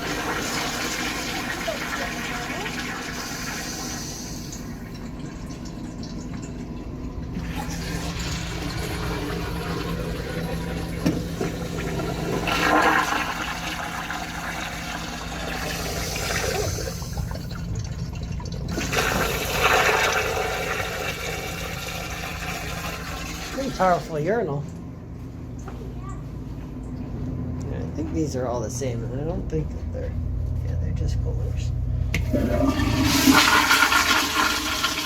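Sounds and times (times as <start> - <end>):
urinal flushing: 0.0 - 24.8, 32.1 - 35.0.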